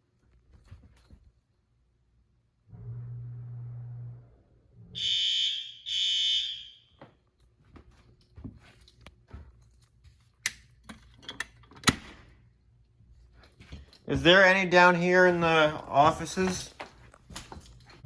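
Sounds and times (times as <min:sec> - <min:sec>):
low hum: 0:02.6 - 0:05.2
fire alarm horn blasts: 0:03.4 - 0:07.0.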